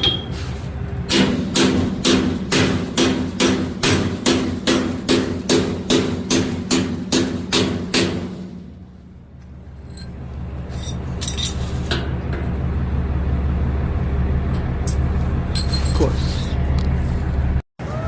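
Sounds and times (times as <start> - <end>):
vehicle engine running: 0.0 - 7.1, 8.3 - 17.6
hammer striking steel bolt: 1.1 - 8.6
metal tools clinking: 9.8 - 11.8, 14.9 - 16.3.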